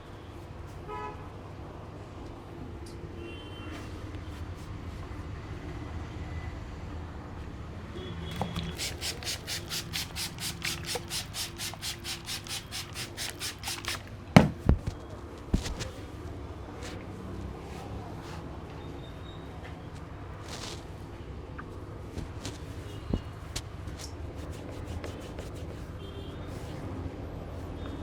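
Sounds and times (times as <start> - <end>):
hands rubbing hair: 8.7 - 14.0, 22.3 - 25.8.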